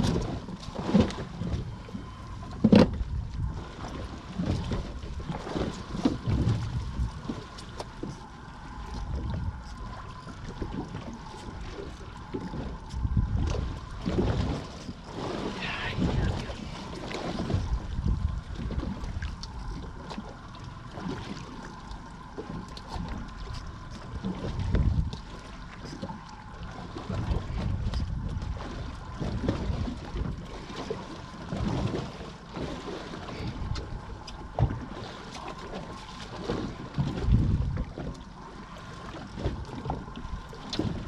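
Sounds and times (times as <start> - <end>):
wind buffeting microphone: 0.0 - 7.5, 12.4 - 14.8, 15.4 - 19.8, 24.1 - 25.3, 27.1 - 30.5, 36.7 - 38.0
water against boat hull: 0.0 - 41.0.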